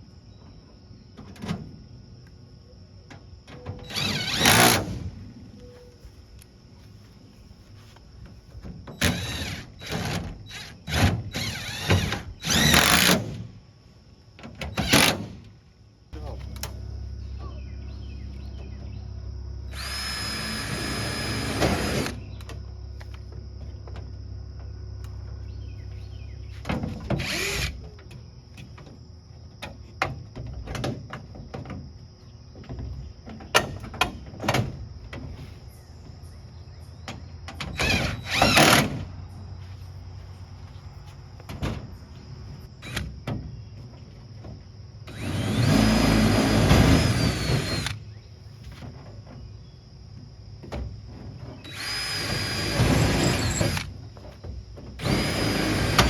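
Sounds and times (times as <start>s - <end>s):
power drill running: 3.9s - 5.0s, 11.4s - 13.2s, 19.7s - 22.2s, 27.2s - 27.7s, 45.1s - 48.0s, 51.7s - 53.9s, 55.0s - 56.0s
steady low hum: 15.3s - 28.6s.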